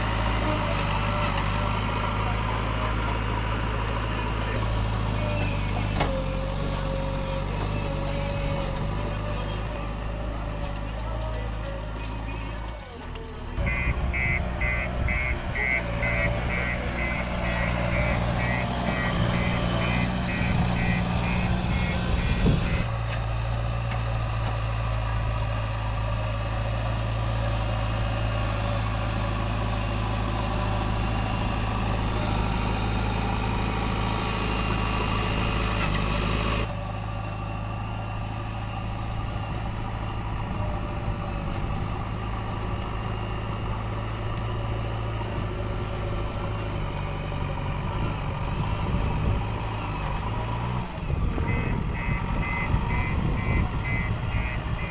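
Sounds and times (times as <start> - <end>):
diesel engine running: 0.0 - 54.9
fast repeated beeping: 52.1 - 54.9.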